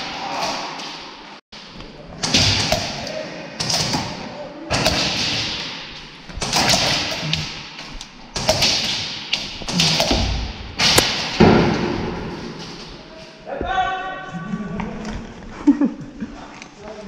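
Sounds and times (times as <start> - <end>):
heavy echoing thuds: 2.2 - 14.2.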